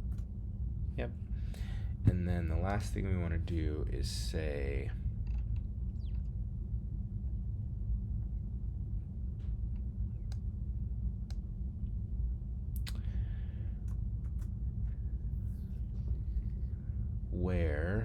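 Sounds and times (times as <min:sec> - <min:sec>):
low hum: 0:00.0 - 0:18.0
keyboard and mouse clicks: 0:13.8 - 0:14.5.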